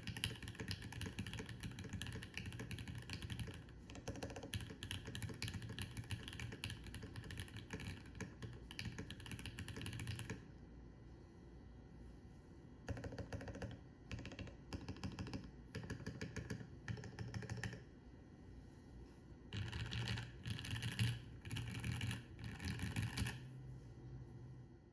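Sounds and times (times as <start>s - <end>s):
mechanical keyboard typing: 0.0s - 10.4s, 12.9s - 17.8s, 19.5s - 23.4s.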